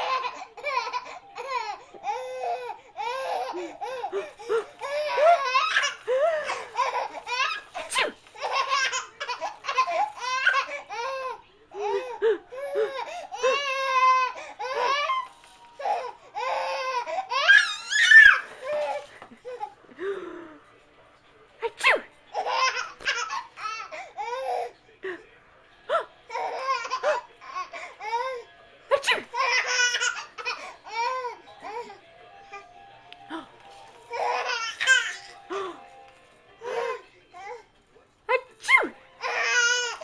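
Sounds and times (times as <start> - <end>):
baby giggling and laughing: 0.0 - 15.2, 22.4 - 24.8, 34.1 - 35.4.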